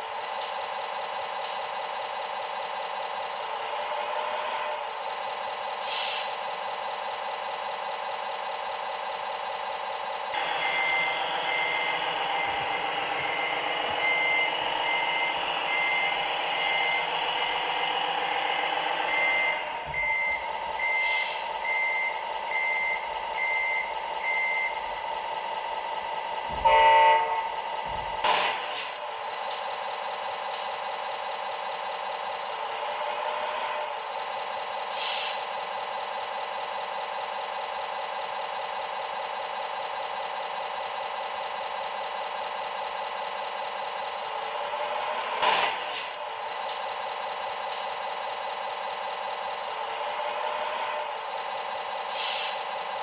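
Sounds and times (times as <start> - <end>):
large vehicle engine running: 0.0 - 53.0
reversing beeper: 10.4 - 25.0, 26.5 - 27.8
loud horn blast: 26.6 - 27.6.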